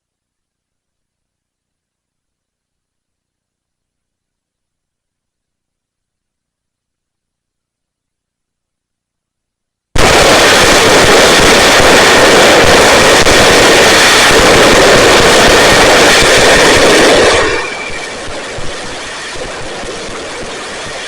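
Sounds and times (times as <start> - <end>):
quiet steady rush: 0.0 - 21.0
firework hissing and crackling: 10.0 - 21.0.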